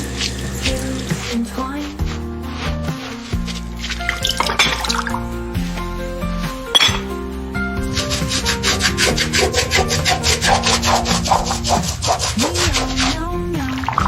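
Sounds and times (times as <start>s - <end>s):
scrubbing strokes on hard surface: 0.0s - 5.1s, 7.8s - 13.2s
soft background music: 0.0s - 14.0s.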